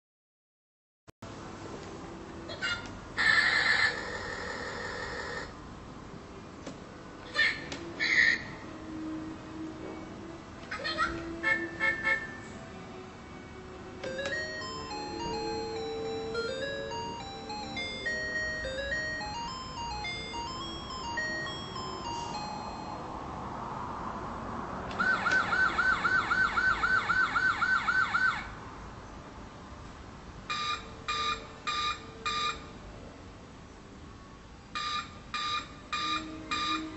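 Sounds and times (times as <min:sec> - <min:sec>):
toy beeping tune: 0:14.0 - 0:23.1, 0:30.5 - 0:32.7, 0:34.8 - 0:36.9
fast warbling siren: 0:25.0 - 0:28.5.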